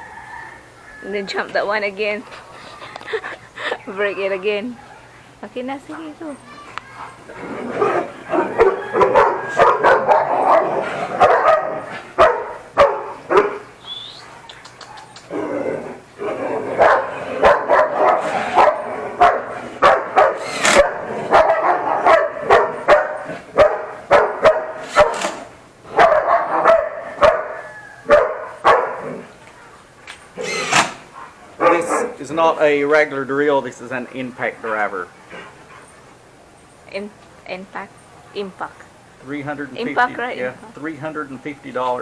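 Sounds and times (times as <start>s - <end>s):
dogs barking: 4.5s - 5.4s, 6.4s - 32.3s.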